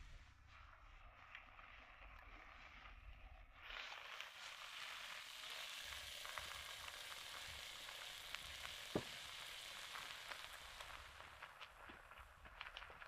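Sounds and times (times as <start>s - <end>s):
vegetables sizzling in a pan: 3.2s - 13.0s.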